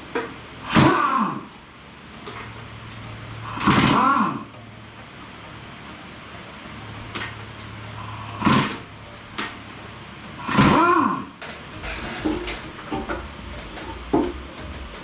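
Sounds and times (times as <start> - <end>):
steady low hum: 11.8 - 15.0.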